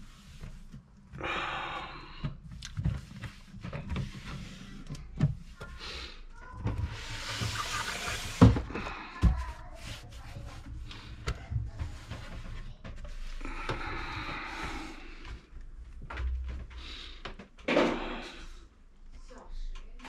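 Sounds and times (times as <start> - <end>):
wiping and rubbing: 0.0 - 1.0, 2.5 - 5.7, 6.4 - 8.7, 9.3 - 13.4.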